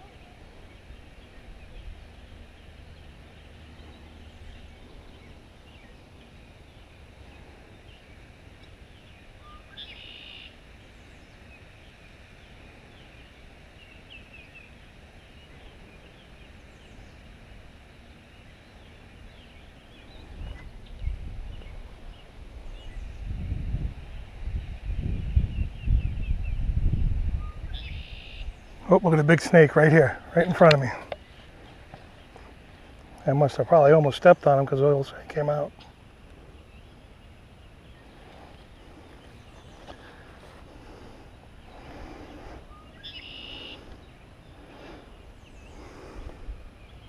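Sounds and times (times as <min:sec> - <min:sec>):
birds chirping: 0:00.0 - 0:47.0
loud bird call: 0:09.4 - 0:10.6, 0:27.5 - 0:28.6, 0:41.6 - 0:44.0
low rumbles on microphone: 0:20.0 - 0:28.9.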